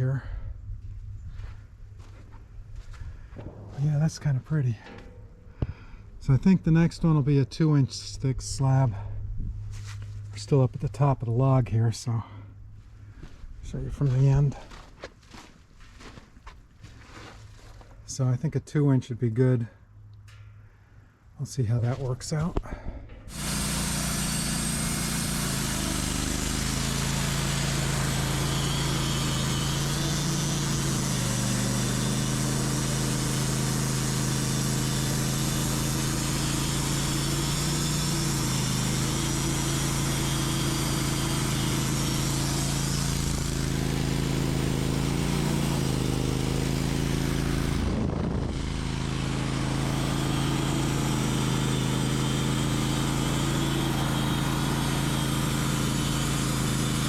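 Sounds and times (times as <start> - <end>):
sawmill engine under load: 3.4 - 9.2, 21.4 - 57.0
saw blade cutting log: 23.3 - 57.0.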